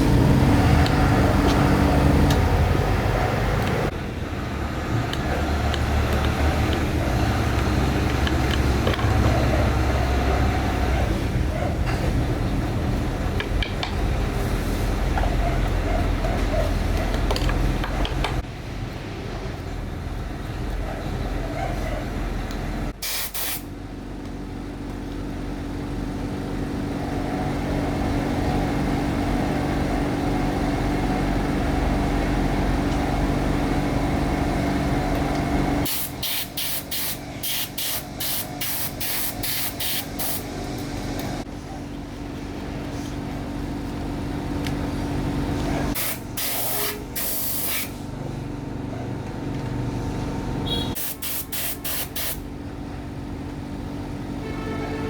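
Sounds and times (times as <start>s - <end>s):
spray nozzle hissing: 23.0s - 23.6s, 35.8s - 40.5s, 46.0s - 47.9s, 51.0s - 52.4s.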